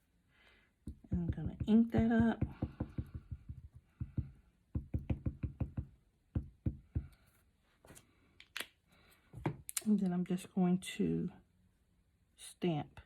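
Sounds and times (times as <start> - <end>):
stamp knocking on ink pad: 0.9 - 7.1.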